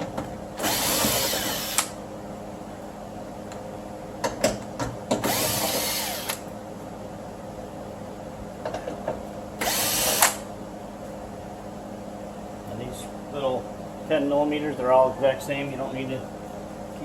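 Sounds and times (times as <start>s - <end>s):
power drill spinning bolts: 0.6s - 1.9s, 5.2s - 6.4s.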